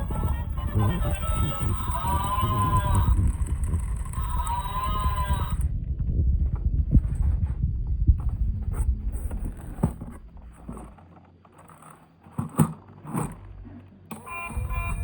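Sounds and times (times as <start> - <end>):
low rumble of toy handling: 0.0 - 15.0.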